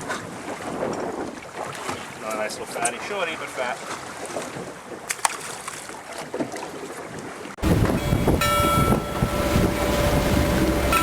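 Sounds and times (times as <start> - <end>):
wind blasting microphone: 0.0 - 1.6, 7.6 - 11.0
water noise: 0.0 - 11.0
boat engine whine: 7.6 - 11.0.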